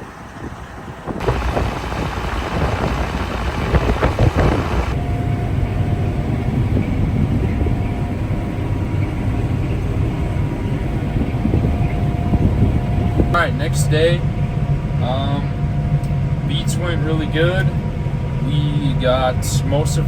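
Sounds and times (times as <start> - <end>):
heavy farm machinery running: 0.4 - 6.5
loud rattling clatter: 1.1 - 5.0
faint high whine: 1.2 - 6.8.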